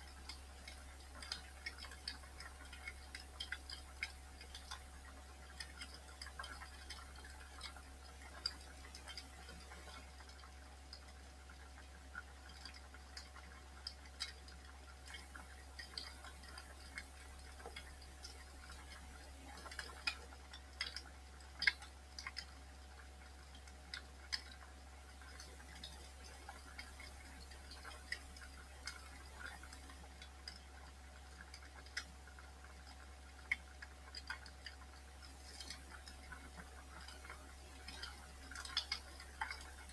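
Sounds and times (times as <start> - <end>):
faint low hum: 0.0 - 39.9
wood fire crackling: 12.6 - 39.9.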